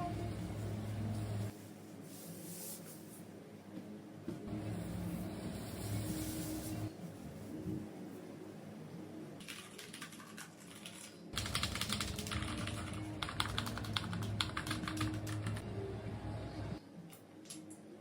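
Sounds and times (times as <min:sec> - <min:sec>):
keyboard keys clacking: 0:11.4 - 0:15.6.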